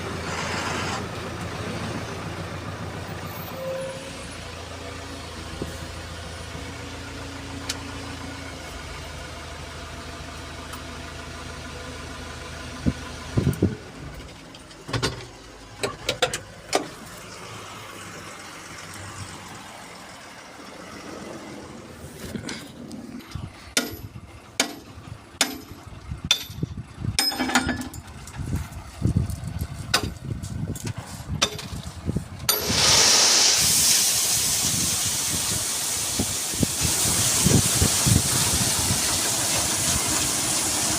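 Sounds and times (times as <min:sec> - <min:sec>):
diesel engine idling: 0:00.0 - 0:40.9
stone chips pouring: 0:32.5 - 0:36.2.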